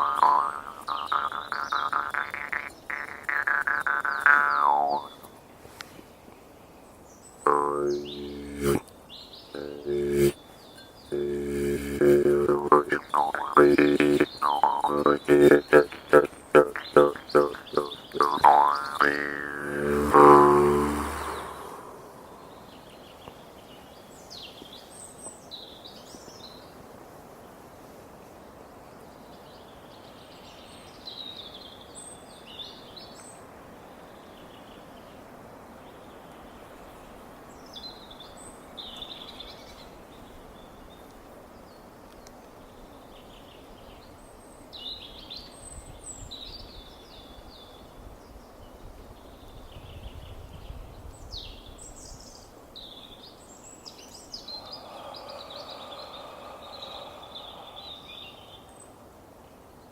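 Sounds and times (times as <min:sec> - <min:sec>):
songbird chirping: 0:00.0 - 0:05.3, 0:07.5 - 0:08.8, 0:09.5 - 0:23.2, 0:52.8 - 0:59.0
wind in trees: 0:00.0 - 0:30.9, 0:32.3 - 0:59.9.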